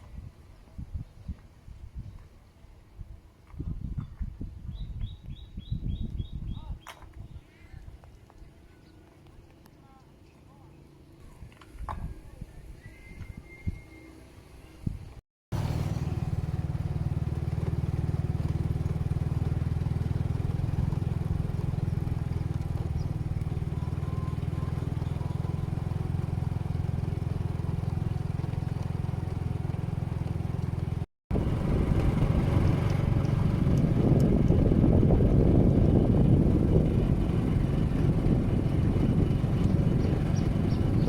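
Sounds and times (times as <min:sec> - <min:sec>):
engine running steadily: 0:14.2 - 0:41.0.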